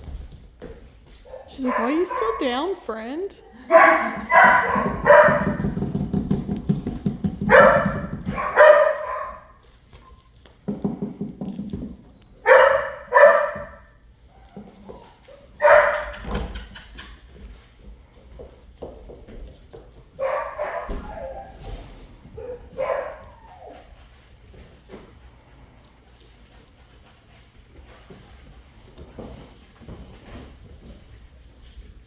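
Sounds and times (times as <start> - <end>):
dog barking: 1.3 - 2.4, 3.5 - 5.8, 7.5 - 9.5, 12.4 - 13.8, 15.6 - 16.2, 20.2 - 21.5, 22.4 - 23.2.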